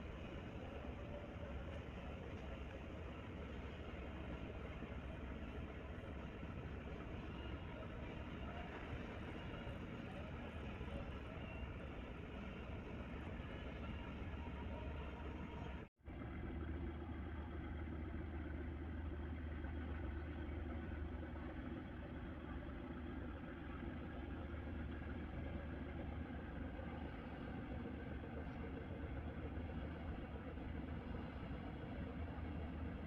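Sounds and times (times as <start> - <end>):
ship engines droning: 0.0 - 33.0.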